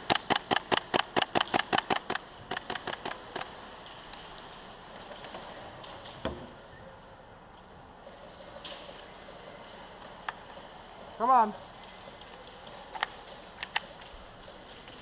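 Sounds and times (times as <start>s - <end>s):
rapid airsoft gunfire: 0.0s - 3.6s.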